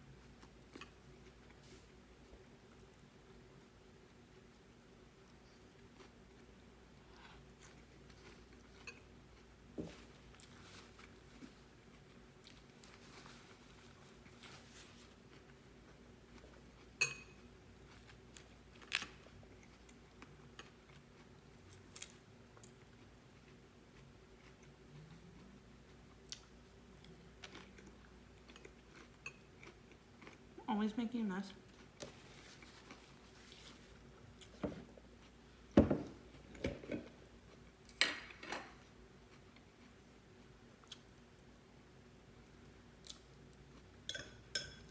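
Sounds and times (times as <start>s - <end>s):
soft chewing and mouth clicks: 0.1s - 30.7s, 31.5s - 44.9s
utensil clinking against dish: 44.1s - 44.9s.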